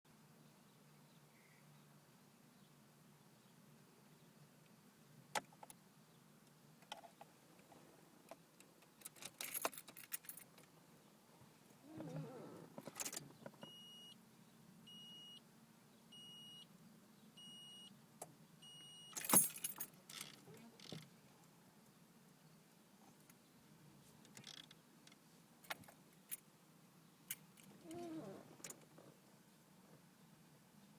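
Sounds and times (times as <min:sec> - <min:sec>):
keys jangling on a key ring: 0:19.2 - 0:20.3.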